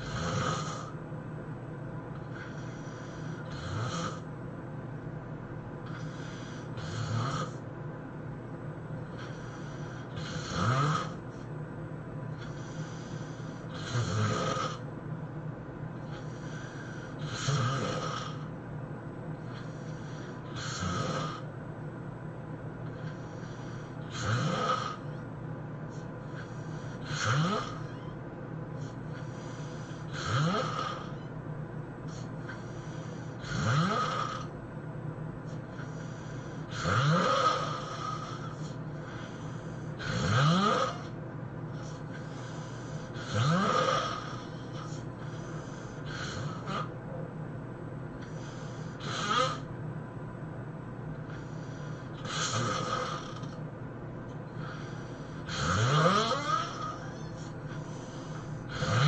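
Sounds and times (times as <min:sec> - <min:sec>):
person snoring loudly: 0:00.0 - 0:01.0, 0:02.3 - 0:04.3, 0:05.8 - 0:07.6, 0:09.1 - 0:11.2, 0:12.4 - 0:14.8, 0:16.0 - 0:18.5, 0:19.5 - 0:21.5, 0:22.9 - 0:25.2, 0:26.3 - 0:28.1, 0:28.8 - 0:31.3, 0:32.1 - 0:34.5, 0:35.7 - 0:46.9, 0:48.2 - 0:49.7, 0:51.3 - 0:53.6, 0:54.5 - 0:59.0
quiet breathing: 0:00.0 - 0:50.0, 0:50.6 - 0:59.0.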